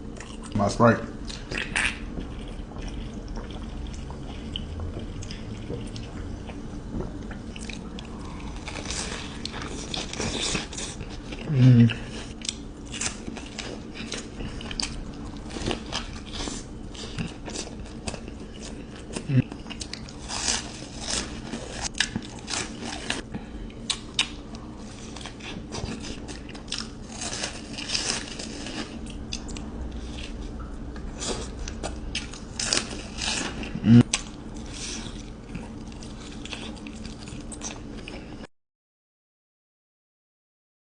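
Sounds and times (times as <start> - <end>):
crunchy bites and chewing: 7.5 - 23.2, 23.8 - 30.5, 31.1 - 38.2
short voiced hum: 11.5 - 12.0, 33.7 - 34.1.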